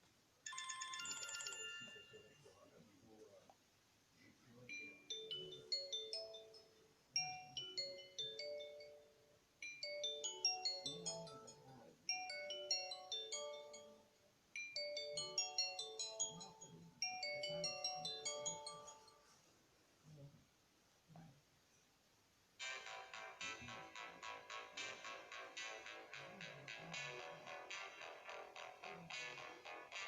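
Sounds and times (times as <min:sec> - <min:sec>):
phone ringtone melody: 0:00.5 - 0:02.4, 0:04.7 - 0:19.3, 0:22.6 - 0:30.0.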